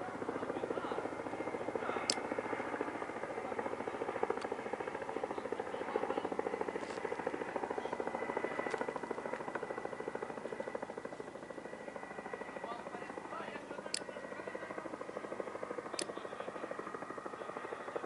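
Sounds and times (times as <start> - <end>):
helicopter rotors beating: 0.0 - 18.0
turbine whine: 0.0 - 18.0.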